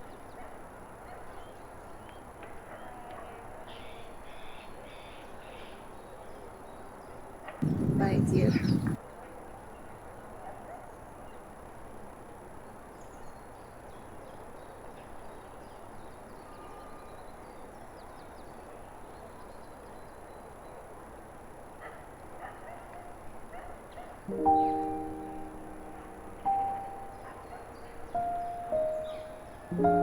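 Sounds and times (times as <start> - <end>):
faint bird chirps: 7.6 - 9.0, 24.3 - 30.0
steady background hiss: 23.1 - 30.0.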